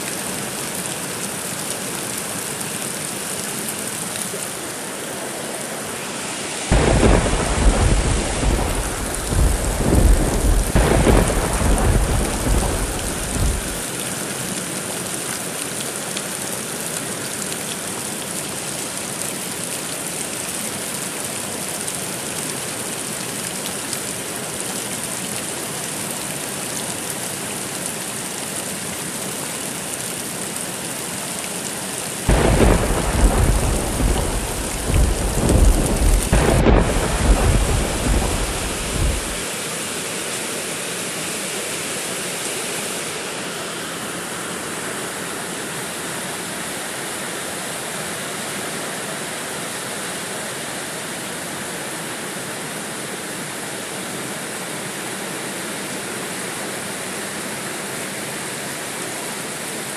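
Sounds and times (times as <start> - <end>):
steady rain: 0.0 - 59.9
rolling thunder: 6.7 - 13.8, 32.3 - 39.4.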